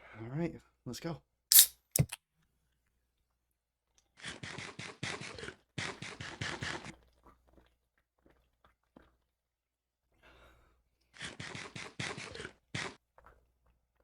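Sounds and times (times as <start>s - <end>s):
fast gulping of a drink: 1.5s - 2.2s.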